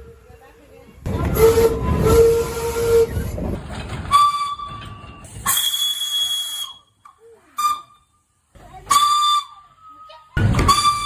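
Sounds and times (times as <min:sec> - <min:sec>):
steam engine working: 0:00.0 - 0:07.0
steam locomotive whistle: 0:01.2 - 0:03.4, 0:04.1 - 0:04.8, 0:05.4 - 0:07.0, 0:07.6 - 0:08.0, 0:08.8 - 0:11.0
loud hiss of steam: 0:05.2 - 0:06.8.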